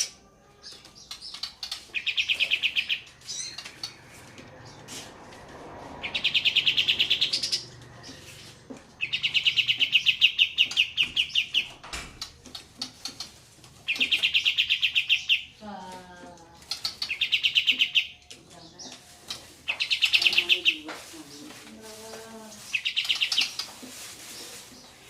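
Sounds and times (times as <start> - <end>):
bird singing high trills: 6.0 - 7.7, 9.0 - 11.7.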